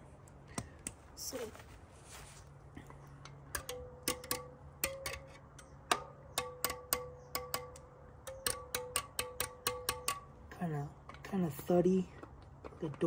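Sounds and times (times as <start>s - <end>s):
metal tool tapping spokes: 3.2s - 10.4s.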